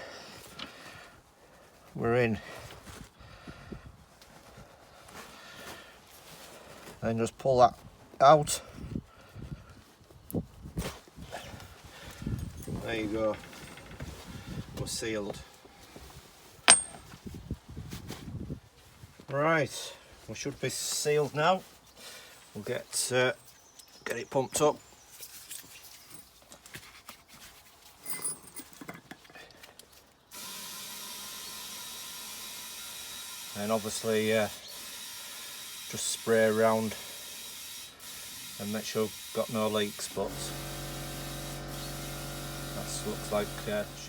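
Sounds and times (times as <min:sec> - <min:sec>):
air hissing into tyre: 0:40.5 - 0:44.0.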